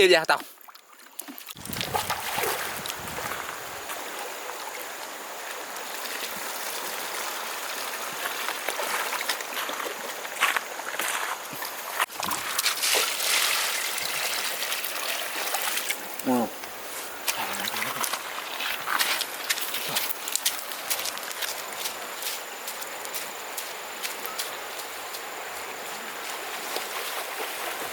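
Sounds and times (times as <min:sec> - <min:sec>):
river water splashing: 0:00.3 - 0:27.9
sharp water slaps: 0:01.2 - 0:03.6.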